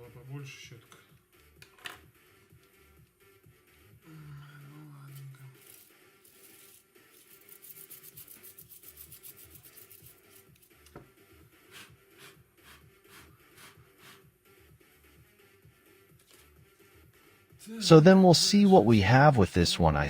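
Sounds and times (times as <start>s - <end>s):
brush scrubbing keyboard: 5.6s - 10.5s, 11.7s - 14.2s.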